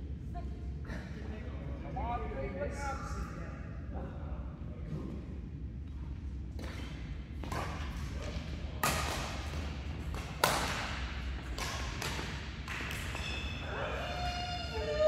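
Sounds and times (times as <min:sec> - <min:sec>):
rackets hitting shuttlecock: 0:06.6 - 0:13.6.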